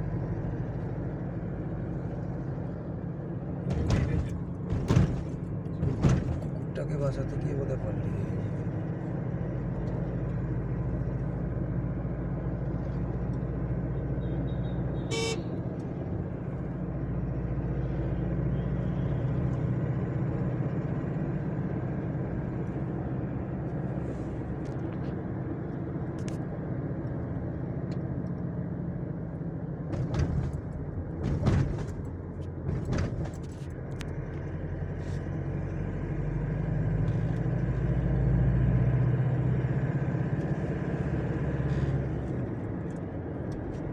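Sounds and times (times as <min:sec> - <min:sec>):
vehicle engine and road rumble: 0:00.0 - 0:43.9
sharp knocks: 0:03.7 - 0:06.7, 0:29.9 - 0:33.6.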